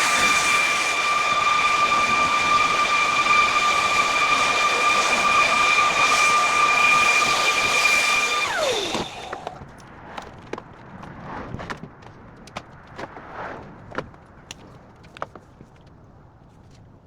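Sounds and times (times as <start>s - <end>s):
power tool motor whining: 0.0s - 9.6s.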